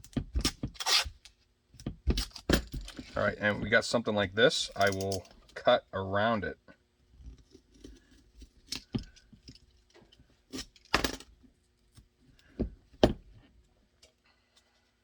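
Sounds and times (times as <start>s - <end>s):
tools tapping and clattering: 4.7s - 5.5s.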